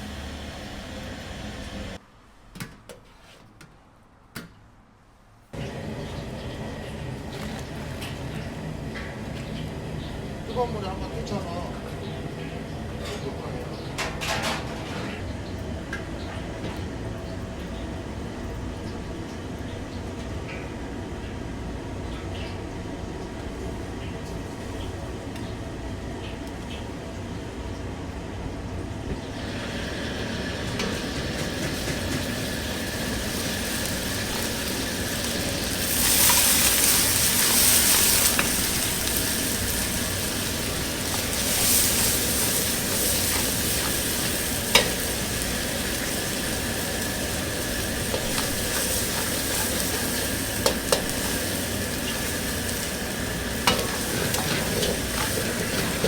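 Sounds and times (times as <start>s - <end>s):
food sizzling in a wok: 29.3s - 56.0s.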